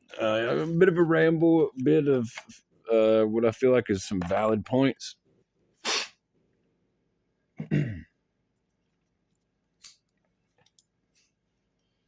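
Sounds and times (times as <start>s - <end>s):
throat clearing: 7.6s - 8.1s
faint clicks: 9.3s - 11.0s.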